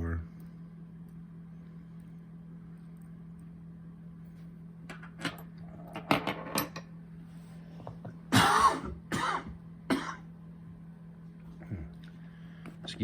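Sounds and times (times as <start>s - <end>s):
man coughing: 8.3s - 10.3s.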